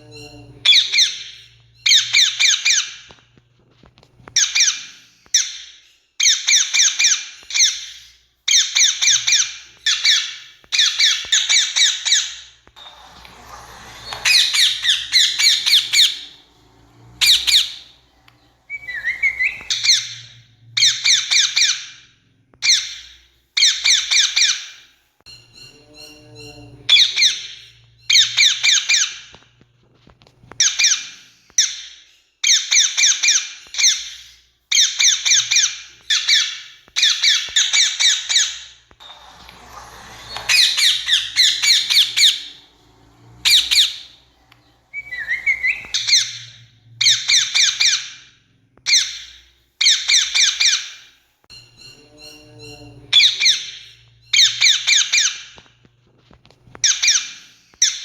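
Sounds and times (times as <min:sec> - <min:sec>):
parakeet screeching calls: 0:04.4 - 0:18.1, 0:18.7 - 0:22.0, 0:30.6 - 0:48.3.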